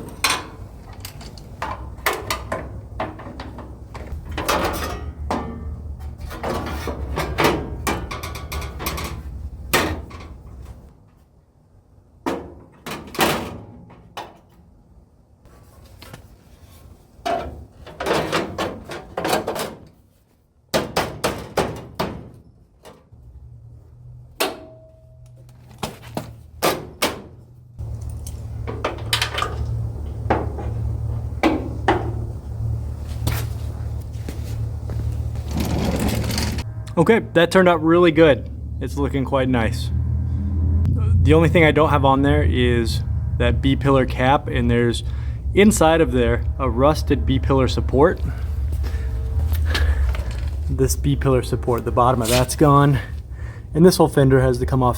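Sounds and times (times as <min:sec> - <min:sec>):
steady low hum: 0:27.7 - 0:54.9.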